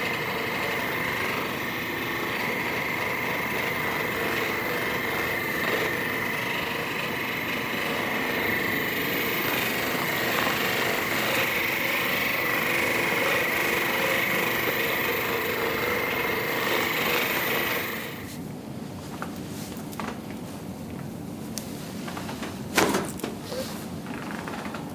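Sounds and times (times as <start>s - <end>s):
percussion massager buzzing: 0.0s - 18.4s.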